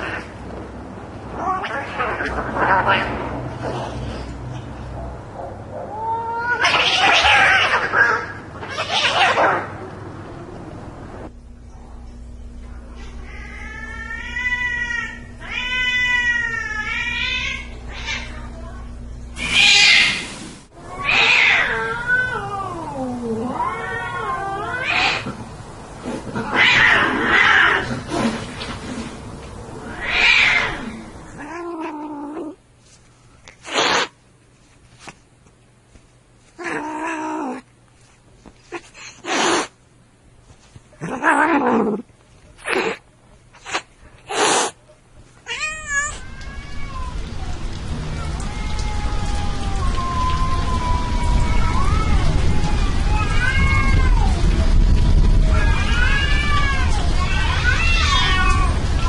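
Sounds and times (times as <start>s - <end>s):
cats yowling and screeching: 1.3s - 3.8s, 5.8s - 9.7s, 13.0s - 18.4s, 19.4s - 20.2s, 20.8s - 25.4s, 26.3s - 28.4s, 29.8s - 32.6s, 45.4s - 59.0s
cat hissing: 19.4s - 29.2s, 29.8s - 32.6s, 33.5s - 34.2s, 38.6s - 39.8s, 41.0s - 44.8s.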